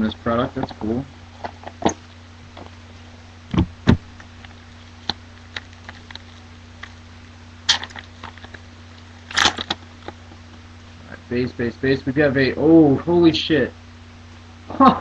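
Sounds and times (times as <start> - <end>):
low electrical hum: 0.0 - 15.0
crinkly pack wrapper rustle: 4.4 - 7.0, 7.7 - 10.3.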